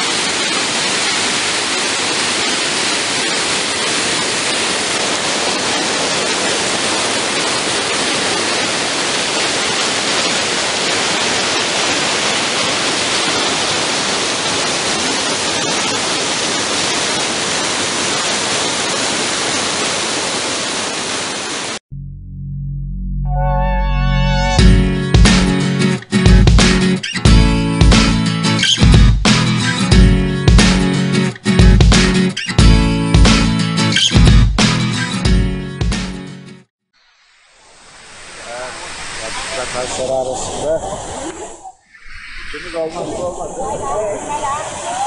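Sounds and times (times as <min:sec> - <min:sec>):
waterfall roaring: 0:00.0 - 0:21.8, 0:37.5 - 0:41.6, 0:42.6 - 0:45.0
guitar music: 0:22.0 - 0:36.6.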